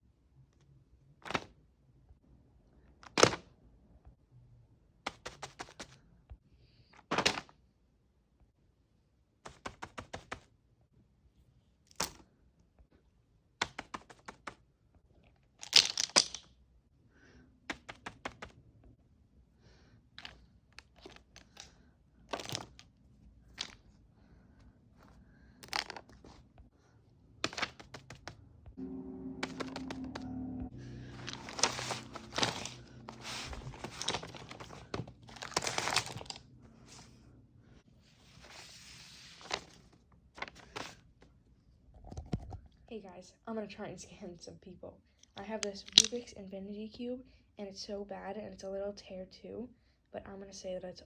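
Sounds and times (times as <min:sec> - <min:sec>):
fidget toys clicking and popping: 0:15.6 - 0:16.5, 0:45.3 - 0:46.2.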